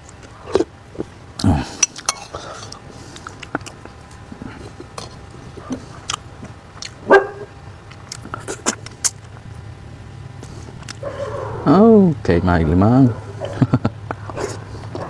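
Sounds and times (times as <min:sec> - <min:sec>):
dog barking: 0:07.0 - 0:07.6, 0:11.0 - 0:11.7.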